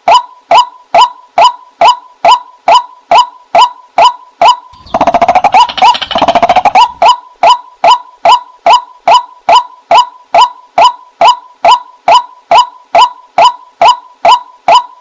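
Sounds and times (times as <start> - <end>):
waterhen chattering notes: 4.8 - 8.0
waterhen harsh calls: 4.9 - 7.6.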